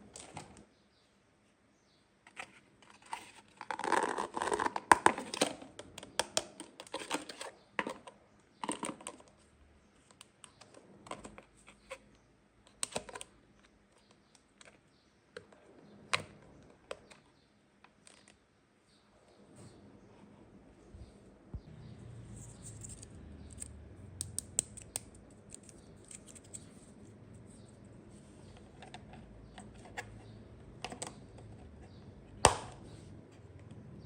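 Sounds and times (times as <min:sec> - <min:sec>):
small plastic pieces clicking: 0:22.7 - 0:26.7.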